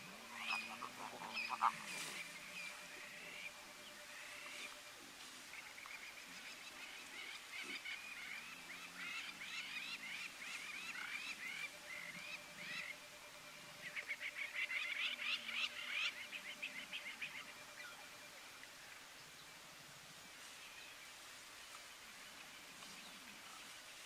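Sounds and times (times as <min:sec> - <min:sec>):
wild birds calling: 0:00.0 - 0:19.0.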